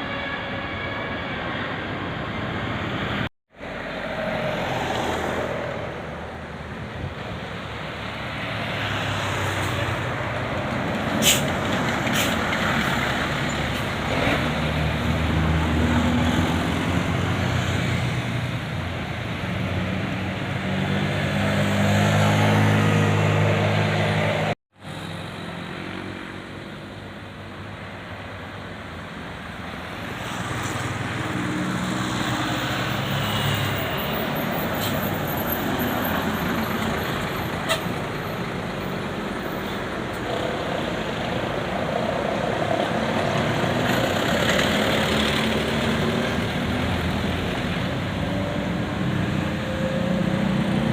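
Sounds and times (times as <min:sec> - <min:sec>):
road noise: 0:00.0 - 0:50.9.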